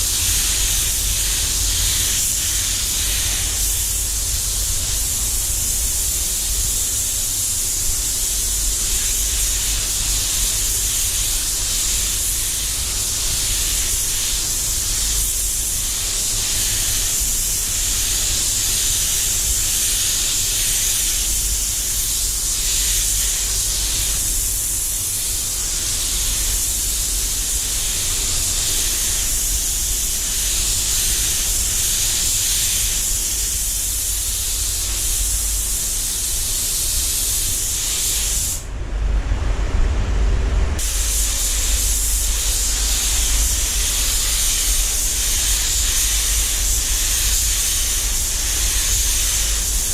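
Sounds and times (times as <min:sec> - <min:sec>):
spray gun hissing: 0:00.0 - 0:38.7, 0:40.8 - 0:49.9
low rumble: 0:38.8 - 0:40.9.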